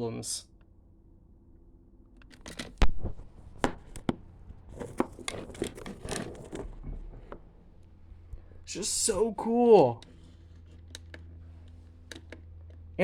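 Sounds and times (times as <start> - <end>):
crinkling and rustling: 2.2 - 8.7.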